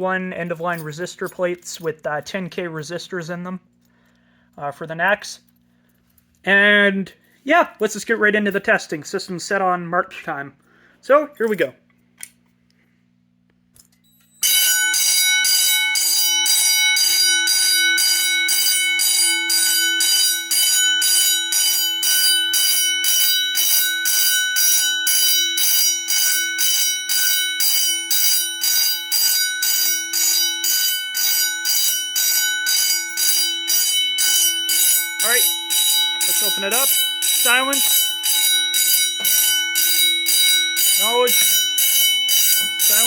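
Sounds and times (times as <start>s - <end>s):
fire alarm bell ringing: 14.0s - 43.0s.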